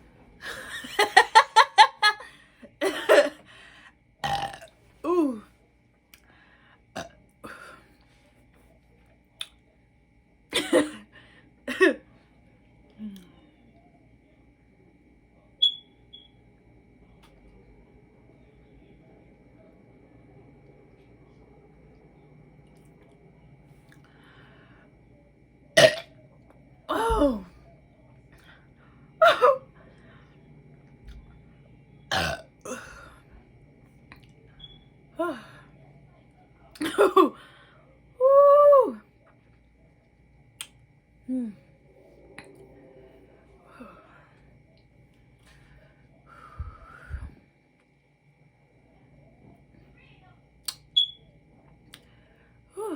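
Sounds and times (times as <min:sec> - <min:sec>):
woman belching: 0:04.2 - 0:05.4, 0:07.0 - 0:07.7, 0:25.8 - 0:26.2, 0:26.9 - 0:27.5, 0:32.1 - 0:33.1
woman burping: 0:04.2 - 0:05.5, 0:07.0 - 0:07.8, 0:10.6 - 0:11.1, 0:11.7 - 0:12.0, 0:25.8 - 0:26.2, 0:26.9 - 0:27.5, 0:29.2 - 0:29.7, 0:32.1 - 0:33.2, 0:36.8 - 0:37.4
soft breathy sound: 0:45.4 - 0:47.4.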